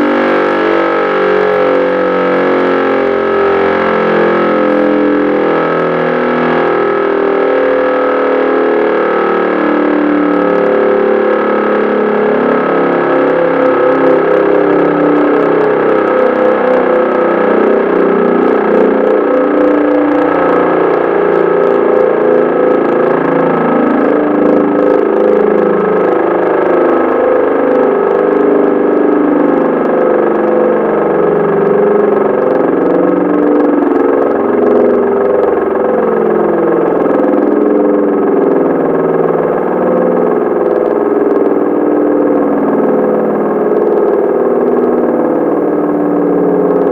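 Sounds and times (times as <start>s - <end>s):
air-raid siren howling: 0.0s - 46.9s.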